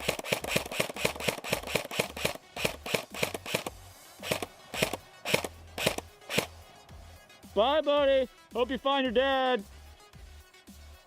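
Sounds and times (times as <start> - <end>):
airsoft gun shots: 0.0 - 6.6.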